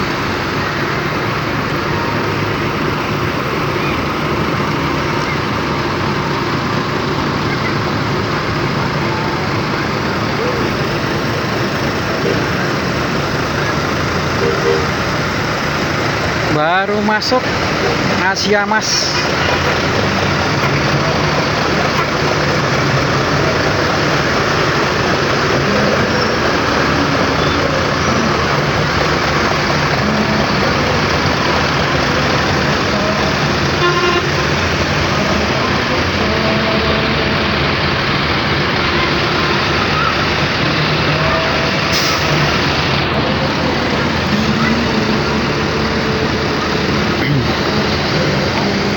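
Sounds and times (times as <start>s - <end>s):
vehicle engines rumbling: 0.0s - 48.9s.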